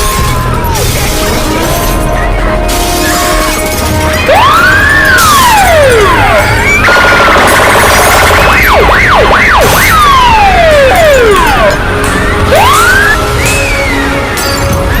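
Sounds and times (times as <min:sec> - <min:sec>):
electronic sirens: 0:04.3 - 0:14.2.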